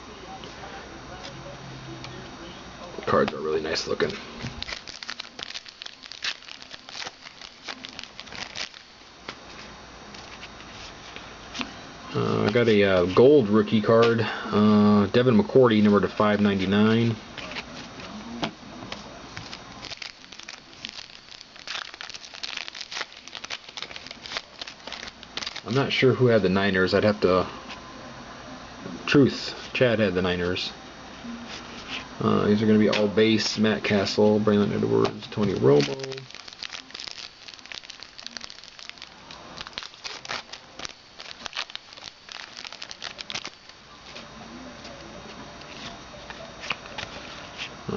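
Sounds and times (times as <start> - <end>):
wrapper crinkling: 3.9 - 10.9, 19.4 - 25.9, 35.0 - 44.2.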